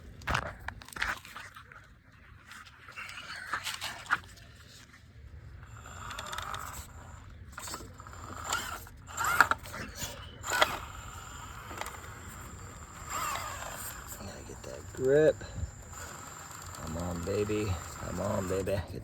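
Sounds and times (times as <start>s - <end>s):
electric motor whine: 5.6s - 19.0s
tyres scraping on rock: 5.7s - 19.0s.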